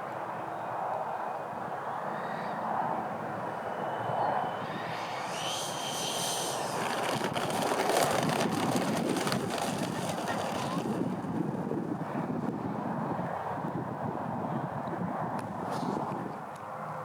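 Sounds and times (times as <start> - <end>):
electric ducted fans whining: 1.3 - 13.2
wind buffeting microphone: 1.5 - 16.5
rush of air: 2.2 - 11.1.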